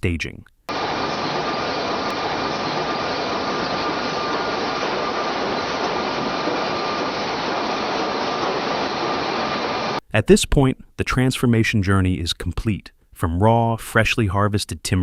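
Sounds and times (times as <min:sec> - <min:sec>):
faint steady machine whine: 0:00.7 - 0:10.0
industrial machinery hiss: 0:00.7 - 0:10.0.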